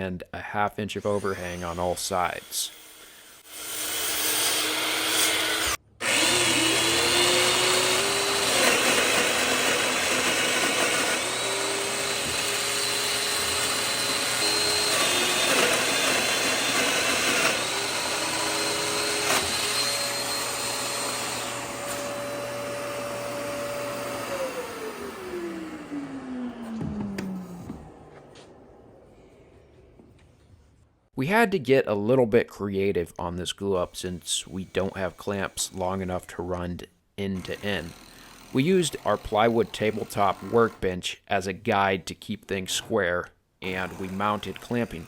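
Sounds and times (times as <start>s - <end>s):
electric power tool motor running: 2.8s - 29.0s.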